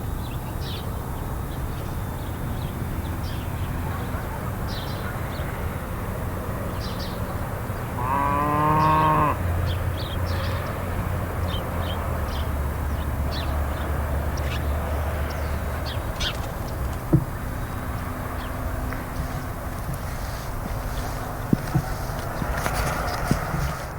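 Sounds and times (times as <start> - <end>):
low engine rumble: 0.0 - 23.9
cow mooing: 8.0 - 9.5
bird chirps: 11.5 - 23.4.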